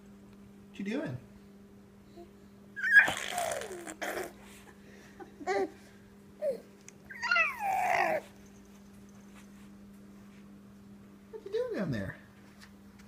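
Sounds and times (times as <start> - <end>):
baby squealing and squawking: 2.8 - 4.4, 7.1 - 8.2.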